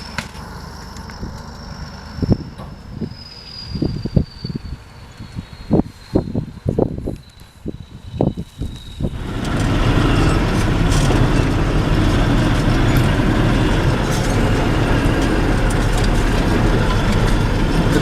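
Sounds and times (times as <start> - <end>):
tractor diesel engine running: 0.0 - 4.0, 9.0 - 18.0.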